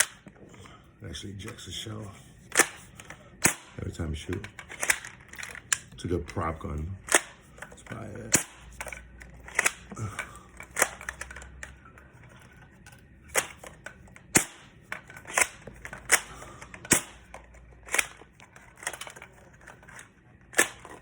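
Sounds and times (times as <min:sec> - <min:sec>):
toy airsoft gun shots: 0:03.4 - 0:03.8, 0:08.3 - 0:08.7, 0:14.3 - 0:14.7, 0:16.9 - 0:17.3.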